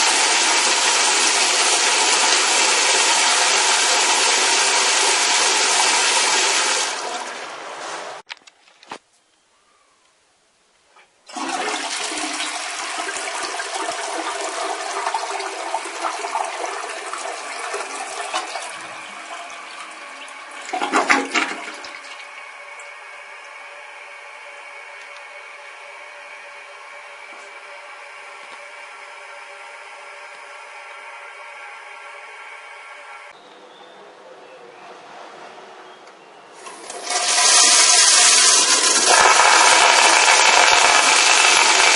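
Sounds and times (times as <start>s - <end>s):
toilet flushing: 0.0s - 8.2s, 11.3s - 27.4s, 36.6s - 41.9s.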